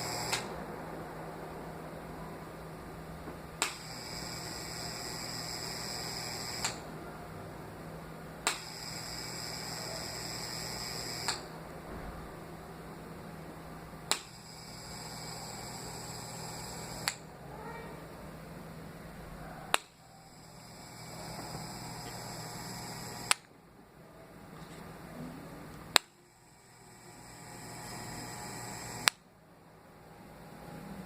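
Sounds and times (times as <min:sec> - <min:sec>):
electric fan humming: 0:00.0 - 0:31.0
fan high whine: 0:00.0 - 0:31.0
sharp click: 0:08.4 - 0:08.7.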